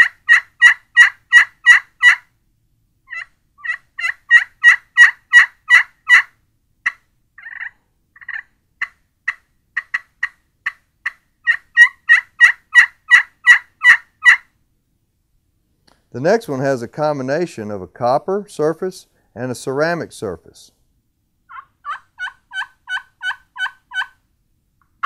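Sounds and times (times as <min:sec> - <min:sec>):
turkey pot call yelps: 0:00.0 - 0:02.3, 0:03.1 - 0:14.5, 0:21.5 - 0:24.2.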